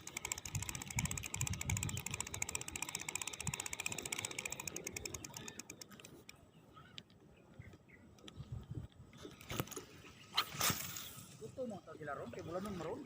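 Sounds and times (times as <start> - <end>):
fishing reel clicking: 0.0 - 6.4.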